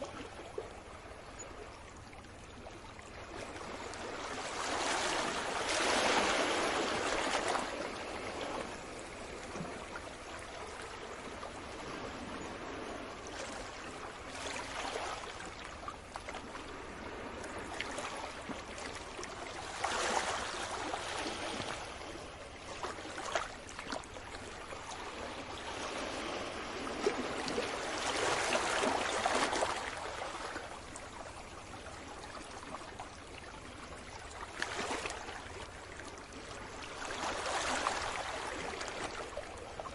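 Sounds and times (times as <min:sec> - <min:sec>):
sea waves washing onto shore: 0:03.4 - 0:10.0.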